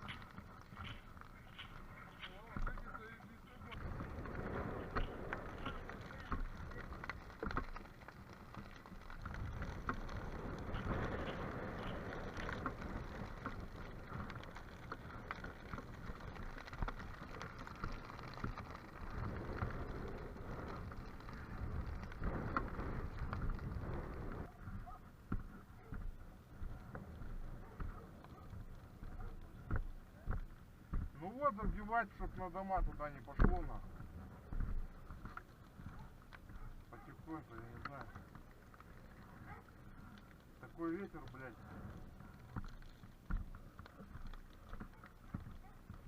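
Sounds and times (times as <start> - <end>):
dry grass crackling in fire: 0.0 - 46.0
wind buffeting microphone: 3.7 - 7.4, 18.4 - 25.0.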